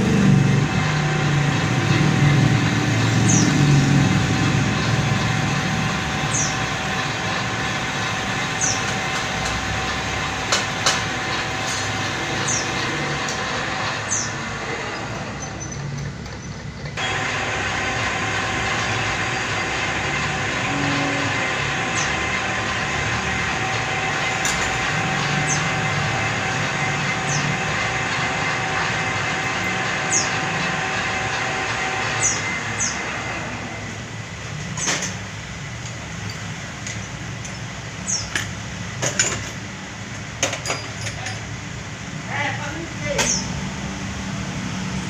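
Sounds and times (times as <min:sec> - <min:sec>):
metal lathe cutting: 0:00.0 - 0:35.1
machine noise: 0:00.0 - 0:45.0.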